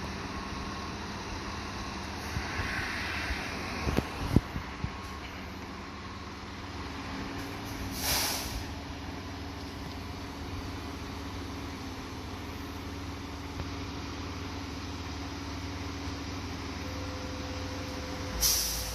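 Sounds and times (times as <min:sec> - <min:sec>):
diesel engine idling: 0:00.0 - 0:18.9
air brakes hissing: 0:07.4 - 0:08.8, 0:18.3 - 0:18.9.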